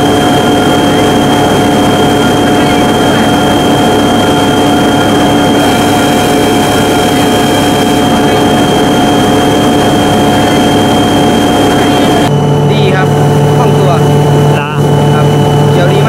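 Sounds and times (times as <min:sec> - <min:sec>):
combine harvester engine drone: 0:00.0 - 0:16.0
high machine whine: 0:00.0 - 0:16.0.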